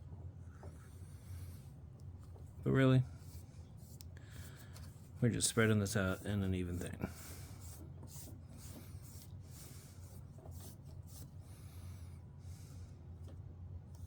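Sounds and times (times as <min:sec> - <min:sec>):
foam brush rubbing on plywood: 0:03.1 - 0:12.0.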